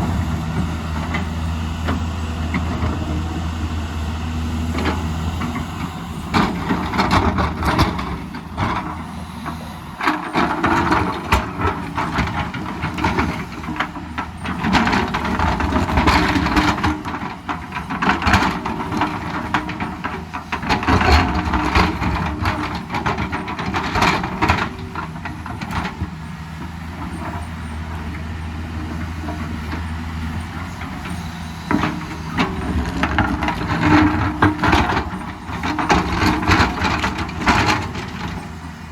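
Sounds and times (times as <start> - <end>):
excavator diesel engine: 0.0 - 38.9.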